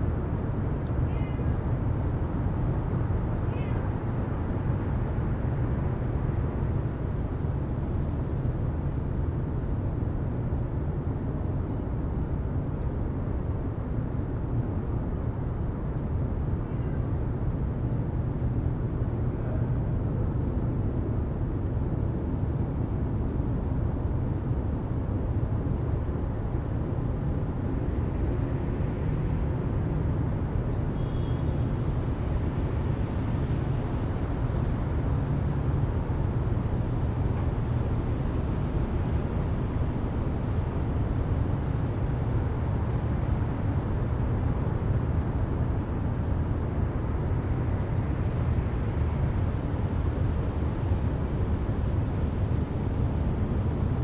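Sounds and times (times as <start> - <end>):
traffic rumble: 12.1 - 53.9.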